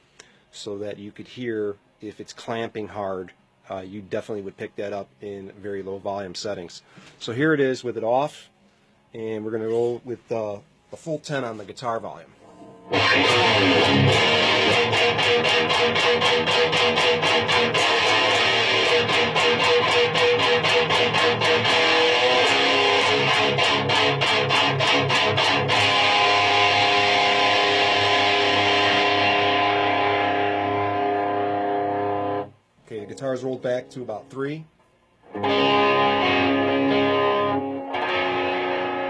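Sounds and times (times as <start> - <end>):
distorted electric guitar: 12.4 - 34.3, 35.2 - 39.0.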